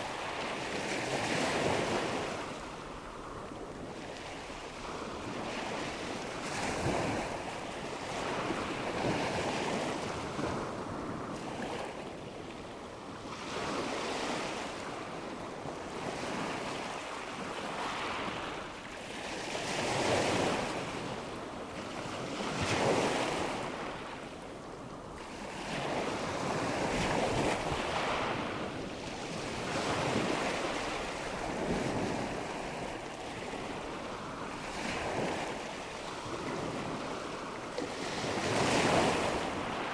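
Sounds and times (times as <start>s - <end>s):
ocean waves breaking on shore: 13.3s - 39.9s.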